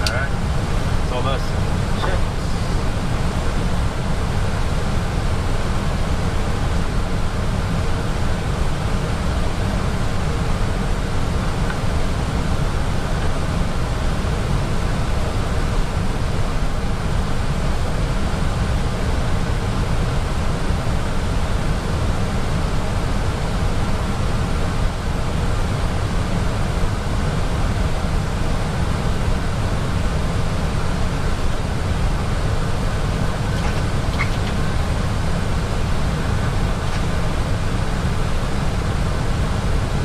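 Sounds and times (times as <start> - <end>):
airplane cockpit air rushing: 0.0 - 3.4.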